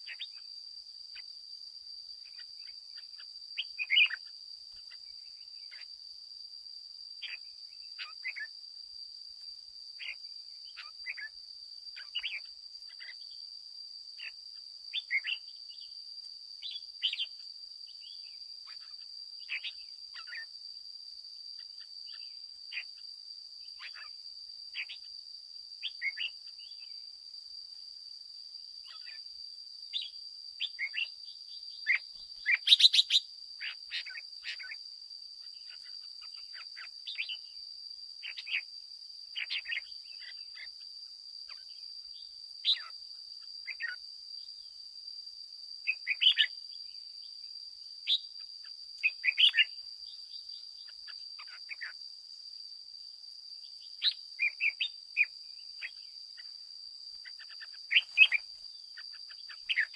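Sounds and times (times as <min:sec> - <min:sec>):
birds chirping and singing: 0:02.3 - 0:04.2, 0:57.2 - 0:59.9.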